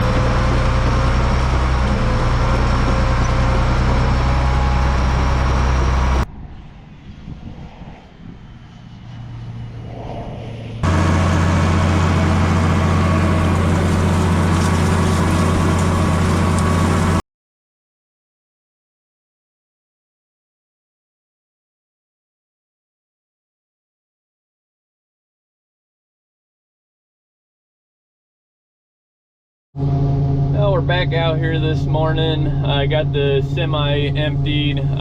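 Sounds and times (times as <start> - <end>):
heavy diesel engine running: 0.0 - 6.3, 10.8 - 17.2, 29.8 - 35.0.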